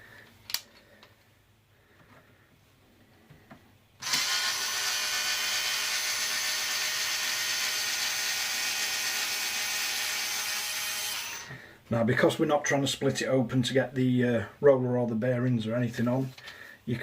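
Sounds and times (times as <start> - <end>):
power screwdriver whine: 4.0 - 11.6.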